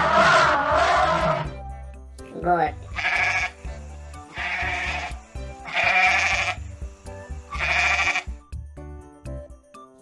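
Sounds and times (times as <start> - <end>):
goat bleating: 0.0 - 1.5, 2.9 - 3.6, 4.3 - 6.6, 7.5 - 8.4
background music: 0.0 - 10.0.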